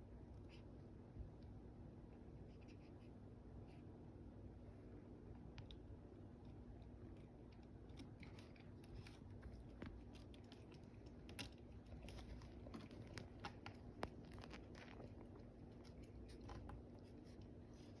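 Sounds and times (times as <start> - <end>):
low steady hum: 0.0 - 18.0
small clicks and crunches: 7.0 - 18.0.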